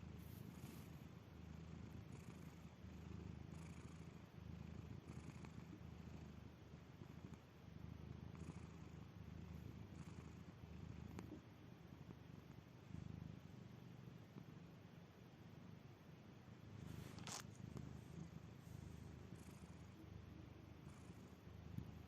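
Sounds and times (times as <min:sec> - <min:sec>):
cat snoring: 0:01.6 - 0:06.3, 0:08.3 - 0:11.4.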